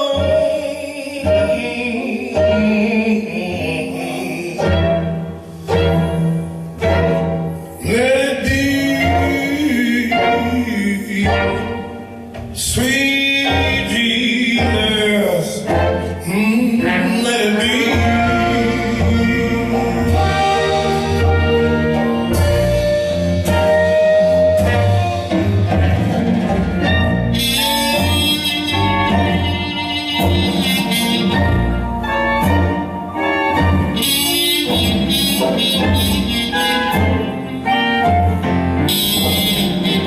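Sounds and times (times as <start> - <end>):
blues band music: 0.0 - 40.0
person singing: 12.6 - 21.4.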